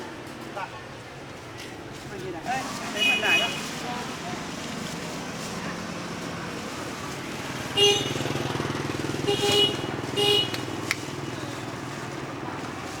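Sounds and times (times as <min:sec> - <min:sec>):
motorbike engine running: 0:05.6 - 0:13.0
motorbike horn beeping: 0:07.8 - 0:08.5, 0:09.2 - 0:10.8.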